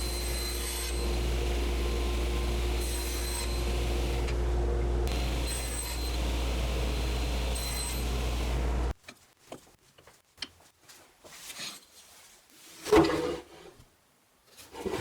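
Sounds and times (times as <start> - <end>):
power tool motor humming: 0.0 - 4.4, 5.1 - 8.9.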